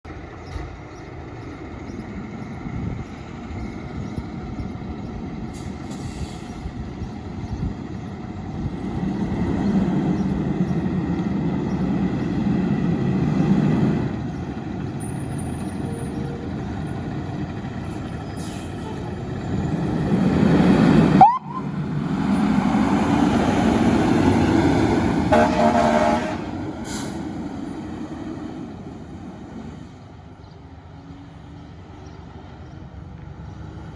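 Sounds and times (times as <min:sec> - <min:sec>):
fire engine engine: 0:00.1 - 0:33.9
air horn blast: 0:25.3 - 0:27.2.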